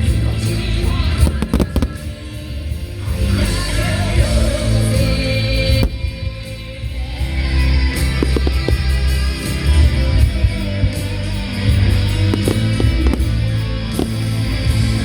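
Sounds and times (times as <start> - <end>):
music with singing: 0.0 - 15.0
firework bangs: 1.2 - 2.9.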